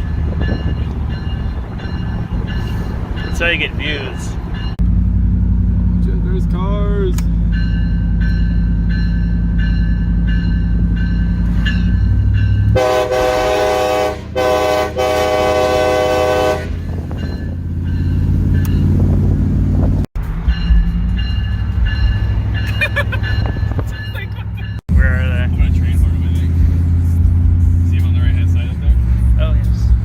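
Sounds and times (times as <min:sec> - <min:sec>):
electronic locomotive bell dinging: 0:00.0 - 0:04.9, 0:06.7 - 0:13.7, 0:16.6 - 0:19.2, 0:20.4 - 0:25.4
pickup engine and road noise: 0:00.0 - 0:30.0
train horn blasts: 0:12.7 - 0:17.0.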